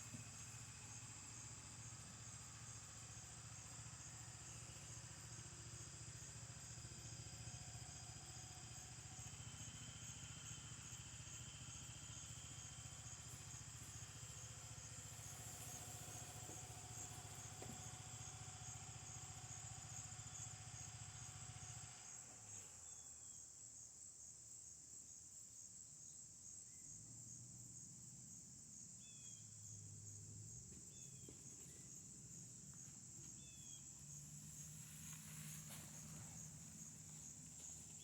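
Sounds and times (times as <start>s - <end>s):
faint engine drone: 0.0s - 23.4s, 26.7s - 38.0s
insects trilling: 0.0s - 38.0s.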